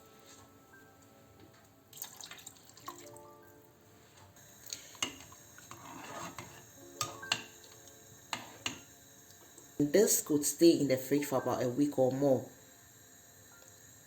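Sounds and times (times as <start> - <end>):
soft background music: 0.0 - 14.0
water dripping into saucepan: 1.9 - 3.2.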